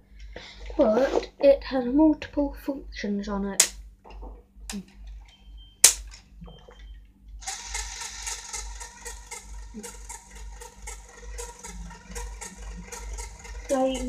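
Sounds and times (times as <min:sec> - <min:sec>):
single sharp click: 0:05.8 - 0:06.1
small electric motor whirring: 0:07.4 - 0:14.0.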